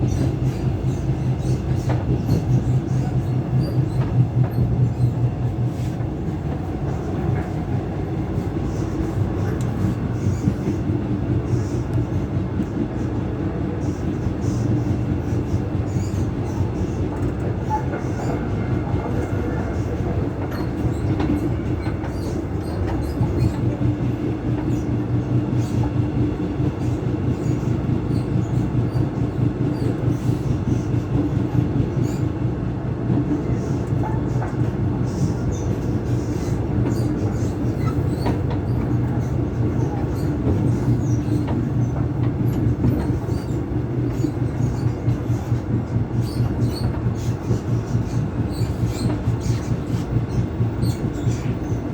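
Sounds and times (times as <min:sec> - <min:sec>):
train rail running noise: 0:00.0 - 0:51.9.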